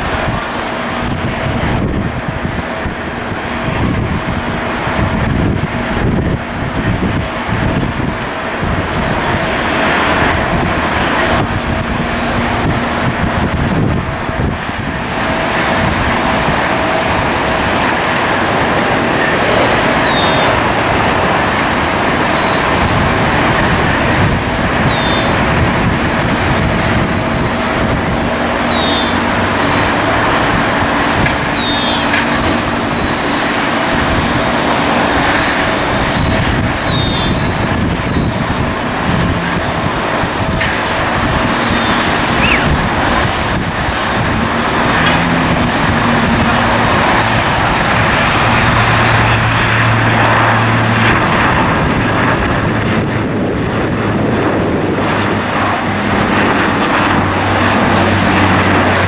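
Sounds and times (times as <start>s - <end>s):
jet engines rushing: 0.0s - 59.0s
short high chirps: 42.4s - 42.7s.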